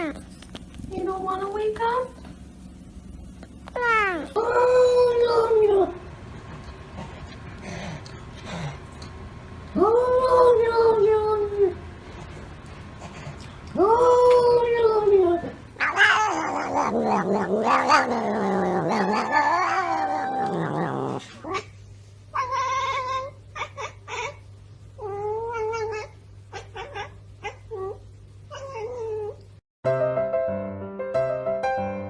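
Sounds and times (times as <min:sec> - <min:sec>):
cat meowing: 0:15.8 - 0:21.7
cat yowling: 0:15.8 - 0:21.7, 0:22.3 - 0:24.4, 0:25.0 - 0:29.4.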